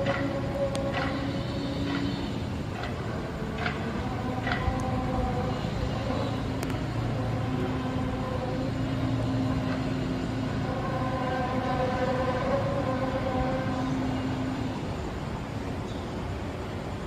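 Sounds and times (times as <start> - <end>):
droning hum with held tones: 0.0 - 17.0.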